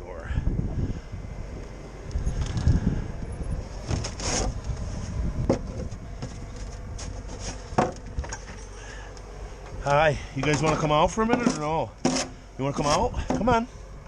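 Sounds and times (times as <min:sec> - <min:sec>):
wind buffeting microphone: 0:00.0 - 0:08.7.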